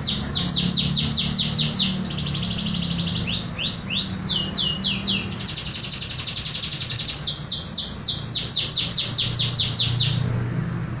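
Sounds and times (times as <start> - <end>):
canary singing: 0.0 - 10.8.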